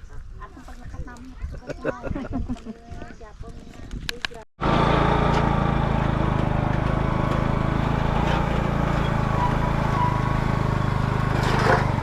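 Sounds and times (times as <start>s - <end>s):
motorcycle engine running: 4.6s - 12.0s.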